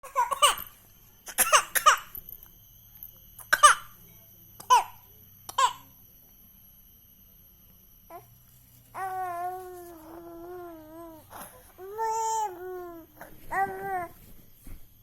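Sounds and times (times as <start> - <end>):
baby coughing: 0.0 - 0.7, 1.3 - 2.1, 3.4 - 3.9, 4.6 - 5.8.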